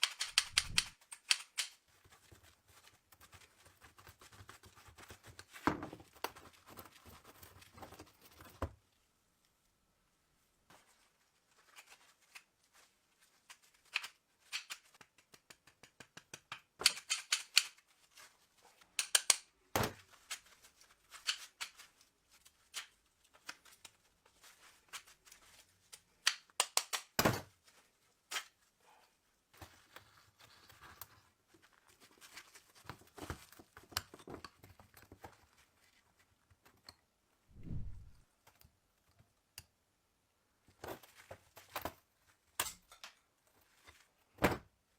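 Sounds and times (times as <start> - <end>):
metallic clicks and knocks: 0.0 - 1.8.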